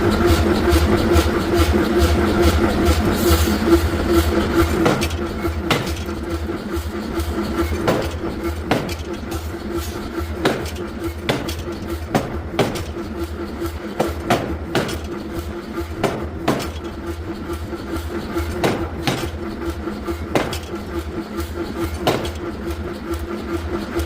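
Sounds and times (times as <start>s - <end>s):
steady machine hum: 0.0s - 24.0s
forging hammer striking metal: 4.6s - 22.8s.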